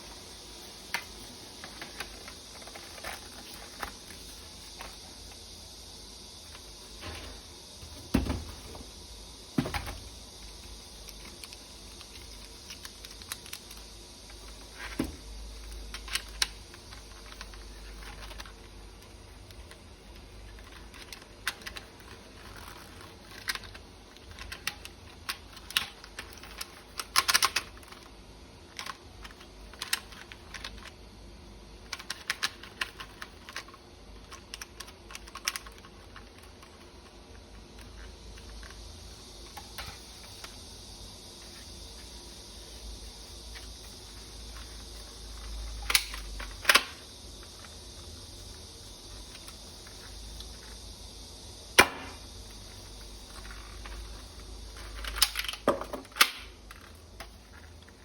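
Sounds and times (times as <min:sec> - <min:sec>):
plastic toy parts clicking: 0:20.5 - 0:28.1, 0:28.7 - 0:31.0, 0:31.8 - 0:36.8, 0:44.6 - 0:47.7, 0:54.8 - 0:57.3.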